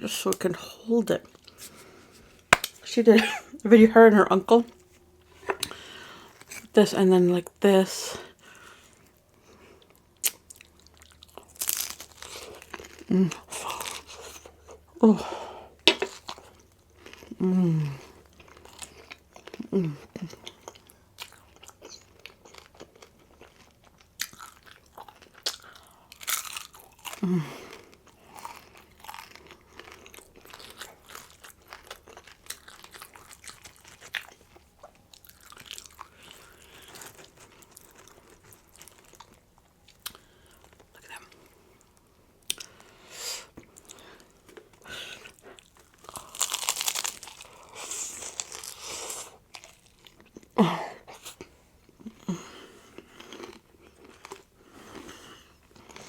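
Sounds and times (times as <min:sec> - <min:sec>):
crunchy bites: 0:02.5 - 0:02.8, 0:43.9 - 0:50.6
chewing: 0:15.9 - 0:42.9, 0:43.6 - 0:56.0.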